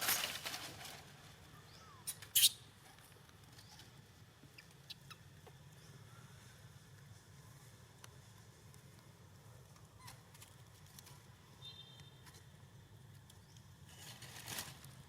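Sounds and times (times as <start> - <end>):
baby monkey squeaking: 2.0 - 2.6.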